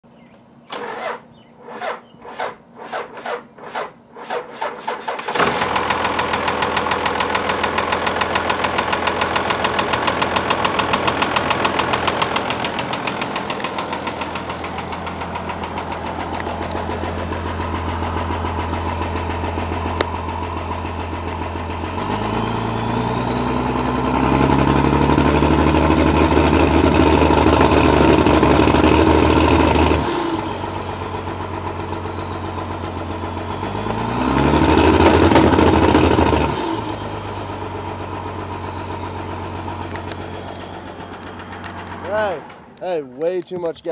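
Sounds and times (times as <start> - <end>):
diesel engine cranking: 0.2 - 43.9
diesel engine revving: 0.6 - 43.2
diesel engine idling: 3.5 - 43.9.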